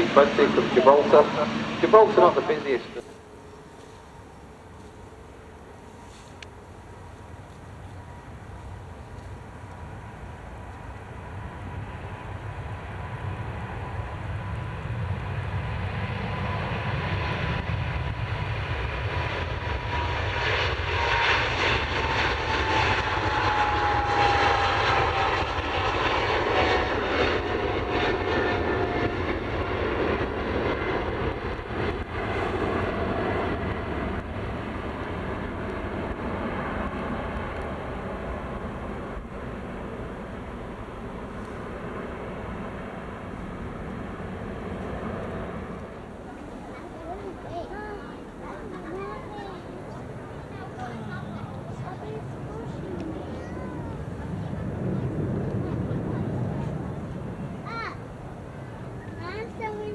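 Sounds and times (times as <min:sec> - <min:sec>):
descending engine whine: 0:00.0 - 0:03.5, 0:10.7 - 0:46.2
jet airliner passing: 0:00.0 - 0:59.9.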